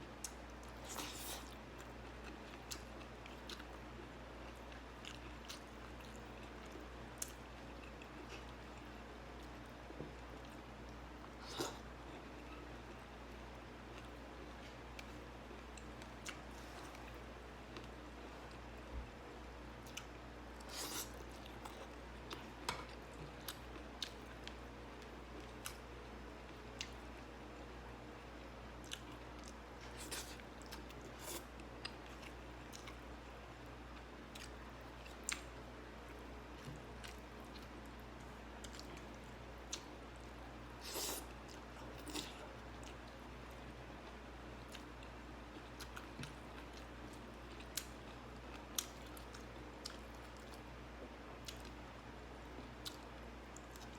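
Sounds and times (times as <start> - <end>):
faint low hum: 0.0 - 53.9
person chewing crunchy vegetables: 0.2 - 9.6, 19.8 - 24.6, 28.8 - 33.0, 36.1 - 51.8.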